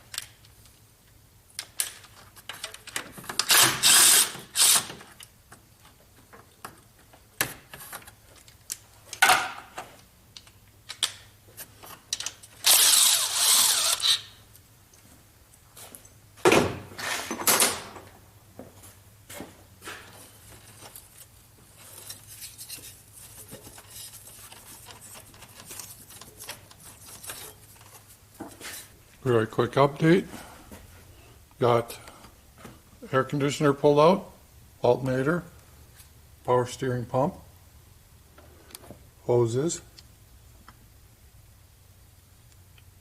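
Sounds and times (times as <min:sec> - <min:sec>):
power tool running: 0:12.6 - 0:14.3.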